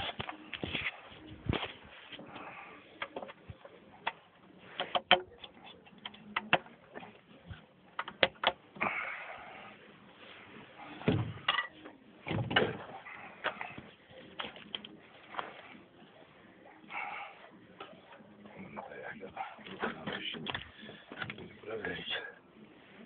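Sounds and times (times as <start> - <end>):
wood and tools clicking and knocking: 1.6 - 8.8, 11.0 - 15.0, 19.6 - 21.5
heavy thumps: 11.0 - 11.5.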